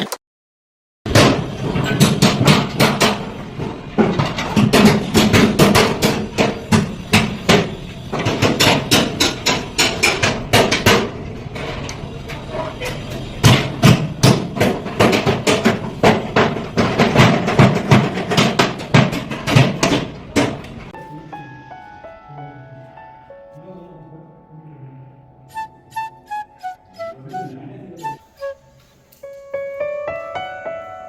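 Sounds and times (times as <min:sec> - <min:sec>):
hand tool striking wood: 0:01.1 - 0:11.1, 0:13.4 - 0:20.7.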